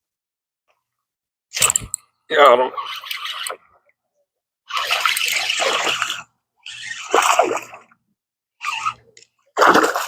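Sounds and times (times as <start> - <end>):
fish splashing at water surface: 9.6 - 10.0.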